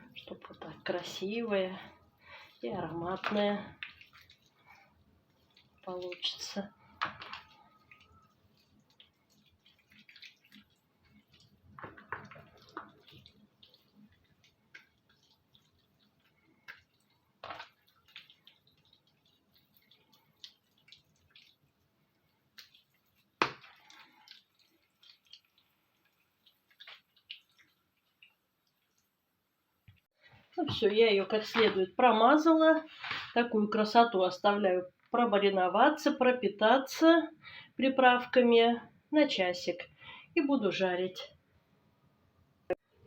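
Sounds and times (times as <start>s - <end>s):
wet squishing of raw meat: 0.0s - 29.1s.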